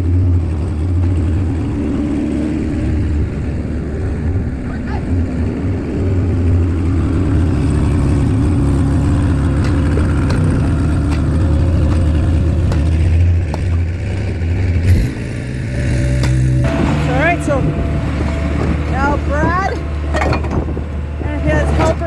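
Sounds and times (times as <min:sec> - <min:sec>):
skid steer engine running: 0:00.0 - 0:22.0
short knocks: 0:16.2 - 0:22.0.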